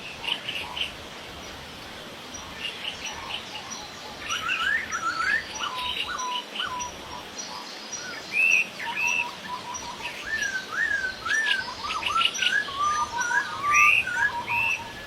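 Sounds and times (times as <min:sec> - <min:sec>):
faint outdoor background noise: 0:00.0 - 0:15.0
bird chirps and whistles: 0:08.5 - 0:15.0.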